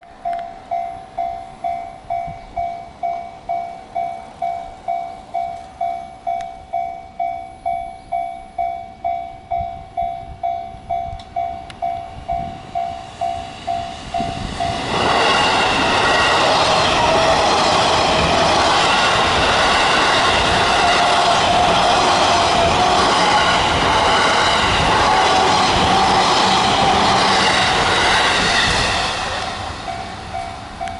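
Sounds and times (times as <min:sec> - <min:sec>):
train passing: 0:00.0 - 0:30.9
level-crossing bell ringing: 0:00.2 - 0:16.0, 0:29.3 - 0:30.9.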